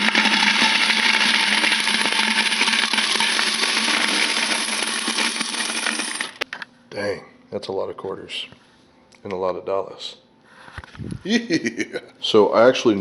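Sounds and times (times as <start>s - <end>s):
coins clattering into a bucket: 0.2s - 6.4s.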